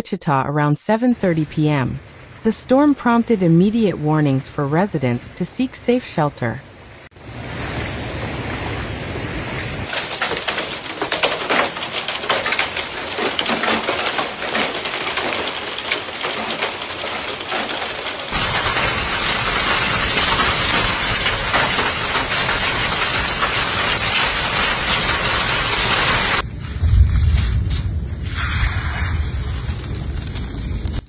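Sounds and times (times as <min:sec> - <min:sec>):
hail and rain on hard surfaces: 0:09.9 - 0:27.0, 0:28.4 - 0:31.0.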